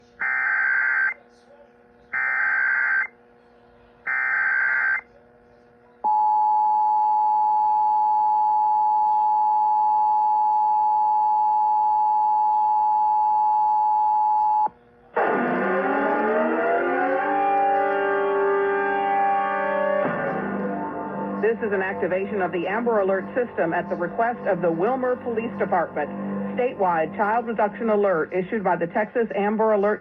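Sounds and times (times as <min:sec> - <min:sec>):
screeching digital header bursts: 0:00.2 - 0:01.2, 0:02.2 - 0:03.1, 0:04.1 - 0:05.0
music with falling sweep: 0:15.2 - 0:27.2.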